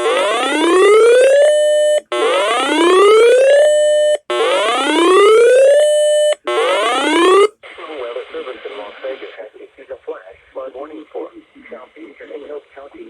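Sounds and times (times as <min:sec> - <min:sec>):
electronic whooping alarm tone: 0:00.0 - 0:07.5.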